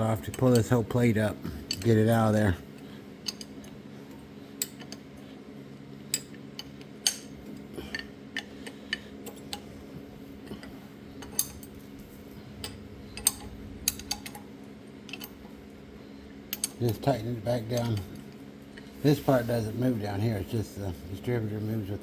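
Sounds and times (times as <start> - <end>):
wrench and steel parts clinking: 1.6 - 2.3, 3.2 - 3.6, 6.1 - 9.7, 10.6 - 11.8, 12.6 - 14.5, 15.1 - 15.4, 16.5 - 18.1.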